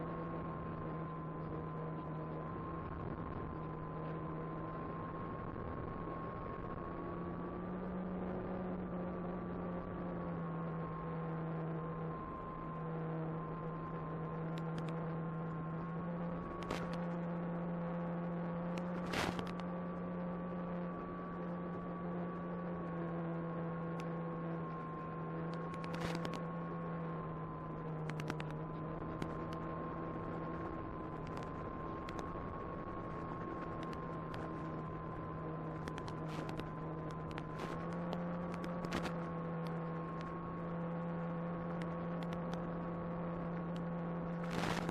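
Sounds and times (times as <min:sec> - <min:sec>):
sharp crackles and clicks: 0:00.1 - 0:44.9.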